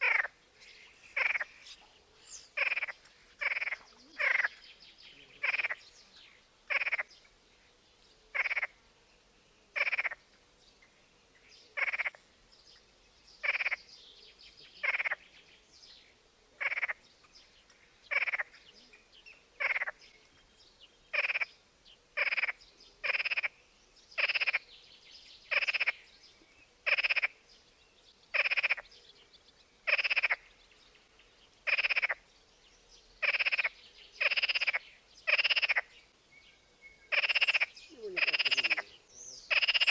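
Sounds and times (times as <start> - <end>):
short animal calls: 1.1 - 4.6, 37.1 - 39.9.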